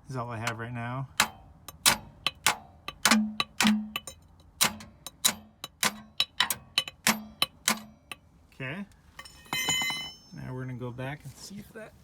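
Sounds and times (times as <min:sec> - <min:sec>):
metal tool clanking on metal: 0:01.2 - 0:08.3, 0:09.1 - 0:11.1.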